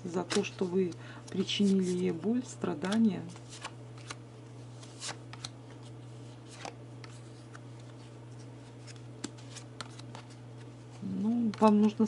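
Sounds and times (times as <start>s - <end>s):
steady low hum: 0.0s - 12.0s
cards flicking and tapping: 4.8s - 5.9s, 8.7s - 10.7s, 11.3s - 12.0s.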